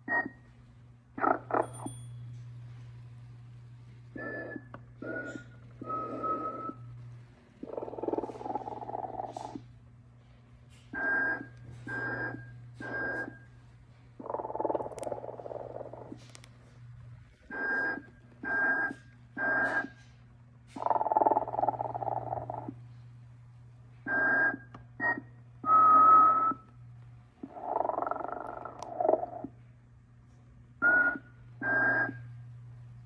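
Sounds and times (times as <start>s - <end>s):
steady low hum: 0.0s - 33.0s
toy snoring with whistle: 4.2s - 6.8s.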